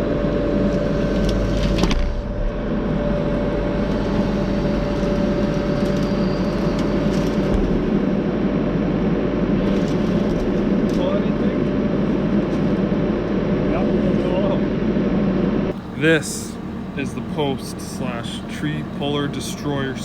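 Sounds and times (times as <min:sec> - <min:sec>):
thin hydraulic whine: 0:00.0 - 0:08.5, 0:15.7 - 0:20.0
skid steer engine running: 0:00.0 - 0:20.0.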